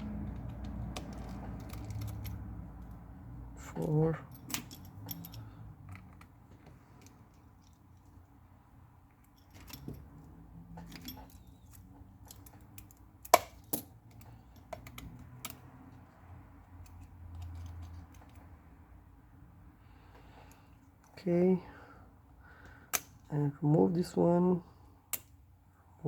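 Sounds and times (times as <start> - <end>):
small tools clicking on metal: 0.0 - 3.0, 10.8 - 16.0.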